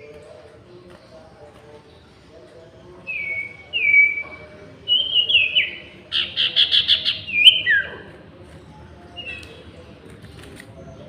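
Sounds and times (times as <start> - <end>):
songbirds whistling: 2.6 - 9.9.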